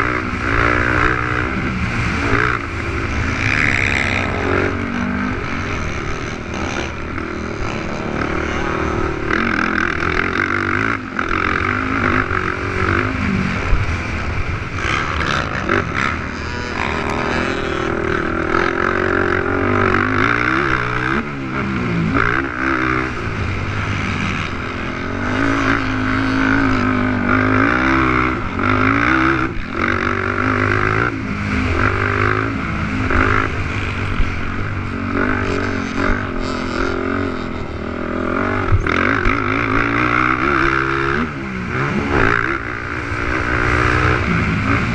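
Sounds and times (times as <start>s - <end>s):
racing quads revving: 0.0s - 44.9s.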